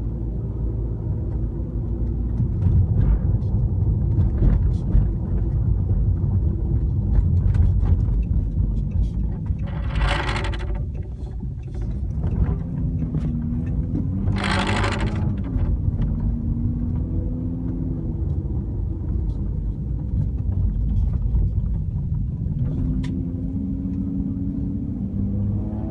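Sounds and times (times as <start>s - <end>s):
road and engine rumble: 0.0s - 25.9s
rear parcel shelf rattle: 8.9s - 12.6s, 14.1s - 15.8s.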